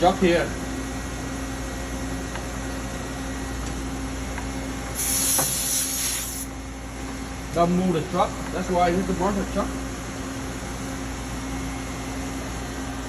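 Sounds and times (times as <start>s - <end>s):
low machine hum: 0.0s - 5.3s, 5.9s - 13.0s
high hissing burst: 5.0s - 6.5s.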